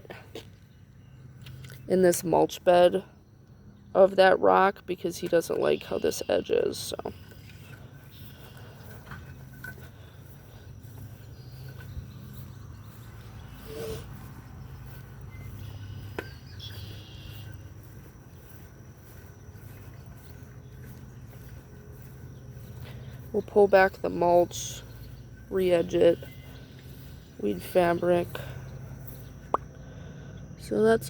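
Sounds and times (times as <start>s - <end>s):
low steady hum: 0.0s - 31.0s
insects chirping faintly: 0.4s - 31.0s.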